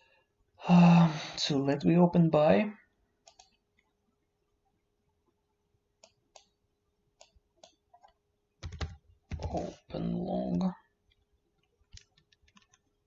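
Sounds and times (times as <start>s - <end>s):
mouse and keyboard clicks: 3.2s - 3.9s, 6.0s - 6.6s, 7.2s - 9.6s.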